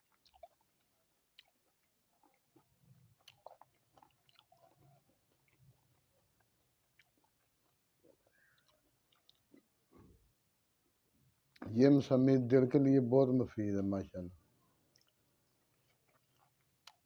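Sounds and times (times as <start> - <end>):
faint chewing of fruit: 0.0 - 11.8, 14.2 - 17.0
soft mouth clicks: 15.9 - 17.0.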